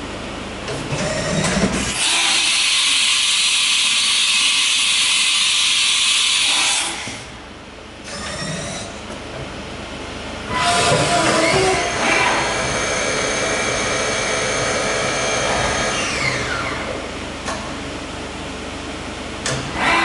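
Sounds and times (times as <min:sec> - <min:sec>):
cnc machine mechanical movement: 0:10.5 - 0:17.1, 0:19.4 - 0:20.0.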